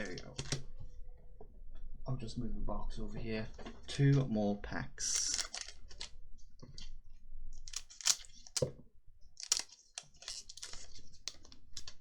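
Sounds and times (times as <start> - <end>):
trading cards being handled: 5.0 - 7.0, 7.6 - 12.0.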